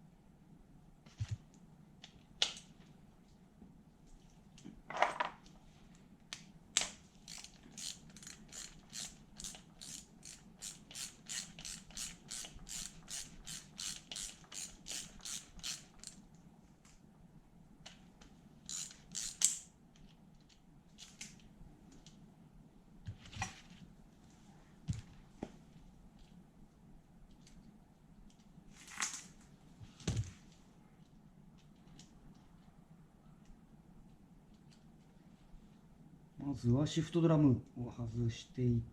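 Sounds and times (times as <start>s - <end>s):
socket ratchet clicking: 7.3s - 16.2s, 18.7s - 19.7s.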